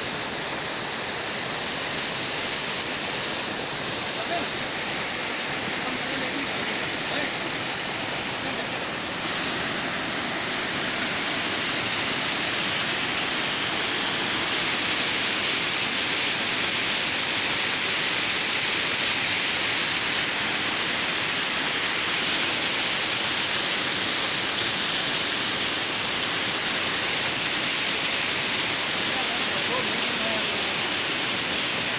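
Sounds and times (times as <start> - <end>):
waterfall rushing: 0.0 - 31.9.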